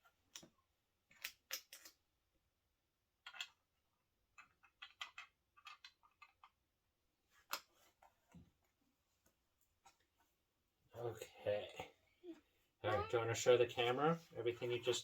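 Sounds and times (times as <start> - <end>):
plastic bricks clicking: 3.2 - 3.6, 4.3 - 6.6.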